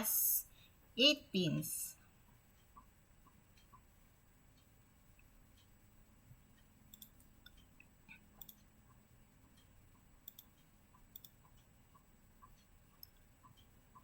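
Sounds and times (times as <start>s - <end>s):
faint computer mouse clicks: 6.6s - 8.7s, 9.4s - 14.0s.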